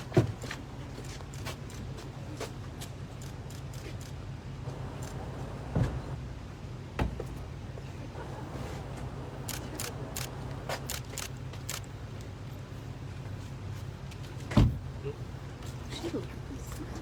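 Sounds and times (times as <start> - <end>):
vehicle engine idling: 0.0 - 16.9
sharp clicks: 2.8 - 4.2, 9.5 - 12.0.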